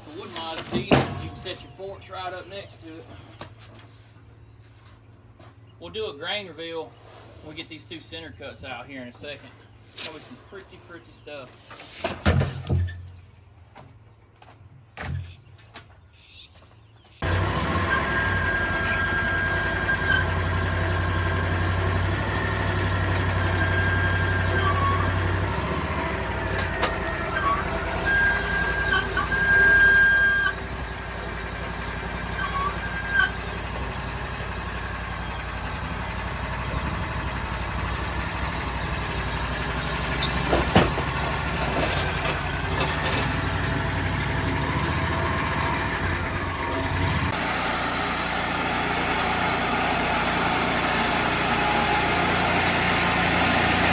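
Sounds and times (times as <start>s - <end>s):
engine idling: 17.2s - 53.9s.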